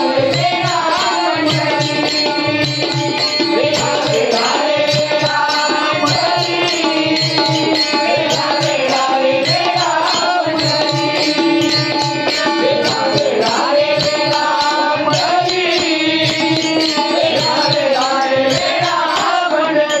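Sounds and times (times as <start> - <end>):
drum beat: 0.0 - 19.4
person singing: 0.0 - 20.0
small hand cymbals: 0.0 - 20.0
sustained pitched accompaniment: 0.0 - 20.0.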